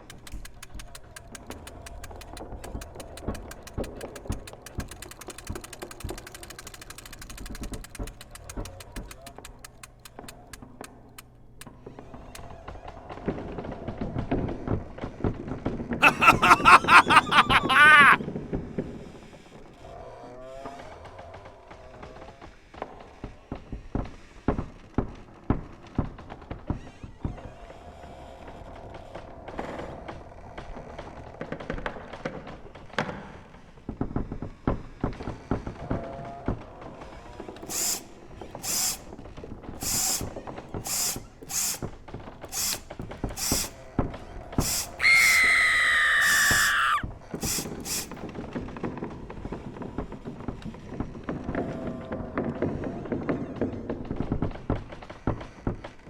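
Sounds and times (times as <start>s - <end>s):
short hissing strokes: 37.7s - 39.0s, 39.8s - 41.9s, 42.5s - 43.8s, 44.6s - 48.2s.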